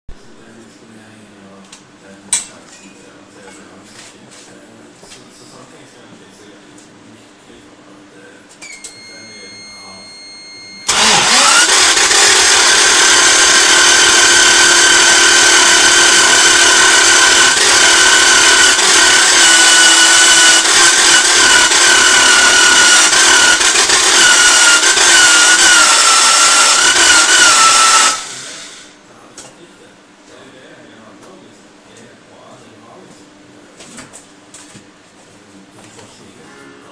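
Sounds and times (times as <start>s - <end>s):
engine cranking on starter motor: 10.8s - 28.9s.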